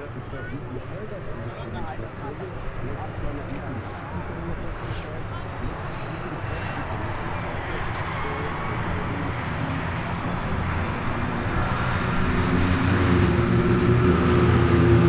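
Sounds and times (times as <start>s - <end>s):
racing car engines droning: 4.0s - 15.0s.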